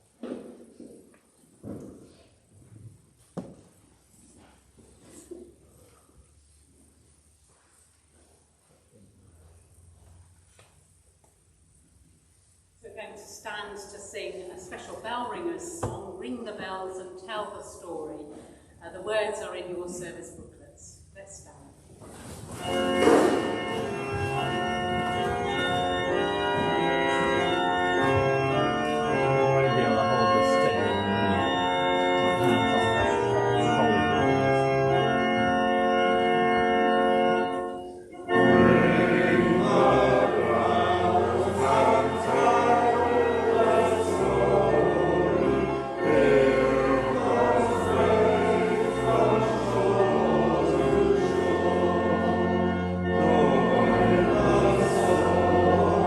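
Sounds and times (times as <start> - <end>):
congregation singing a hymn: 22.2 - 56.0
organ playing held chords: 22.5 - 56.0.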